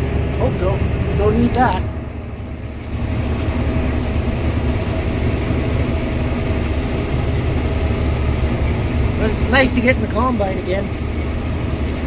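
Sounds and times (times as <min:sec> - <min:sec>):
combine harvester mechanical drone: 0:00.0 - 0:12.0.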